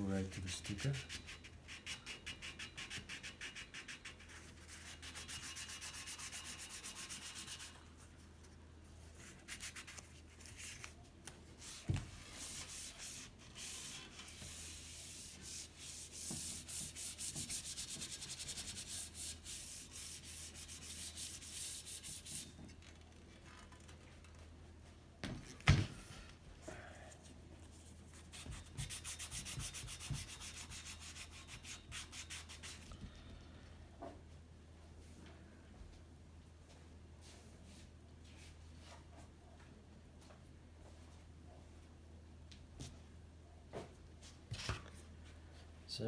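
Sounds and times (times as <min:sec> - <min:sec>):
sandpaper rubbing on metal: 0:00.2 - 0:07.8, 0:12.3 - 0:22.4.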